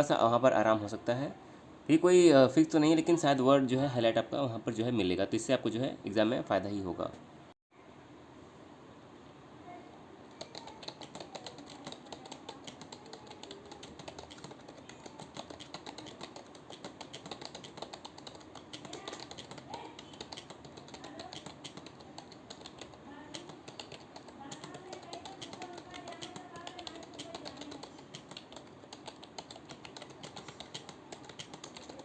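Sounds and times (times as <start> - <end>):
computer keyboard typing: 10.3 - 32.0.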